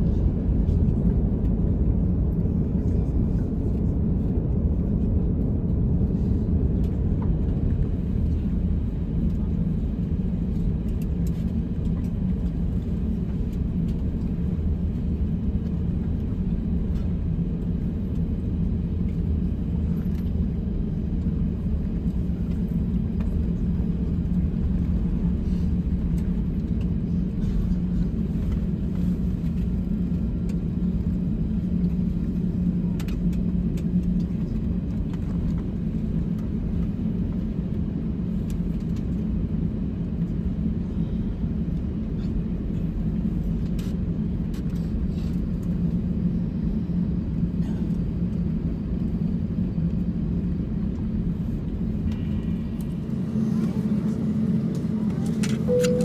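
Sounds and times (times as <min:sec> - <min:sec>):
vehicle interior rumble: 0:41.2 - 0:56.0.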